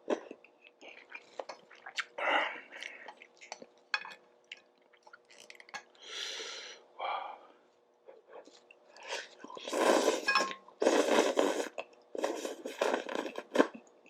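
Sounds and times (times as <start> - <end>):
noodle slurps: 9.0 - 13.8.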